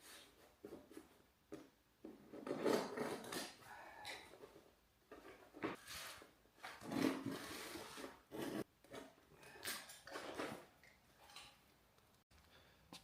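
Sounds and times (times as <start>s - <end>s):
vinyl flooring scraping and rustling: 4.6s - 9.2s.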